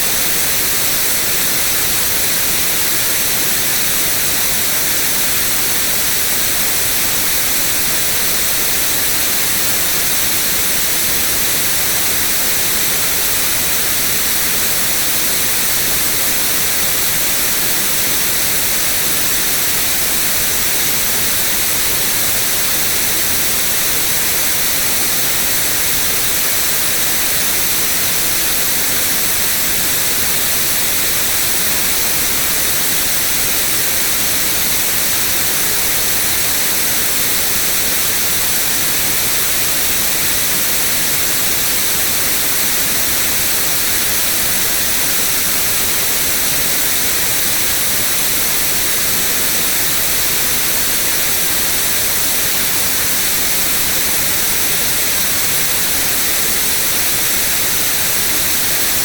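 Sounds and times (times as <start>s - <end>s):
white noise hiss: 0.0s - 59.0s.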